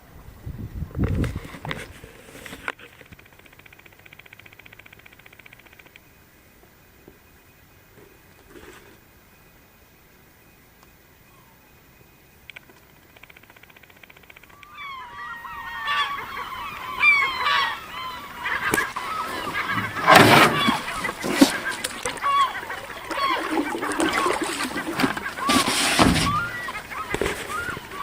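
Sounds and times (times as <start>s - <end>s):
gulls calling in alarm: 13.2s - 28.0s.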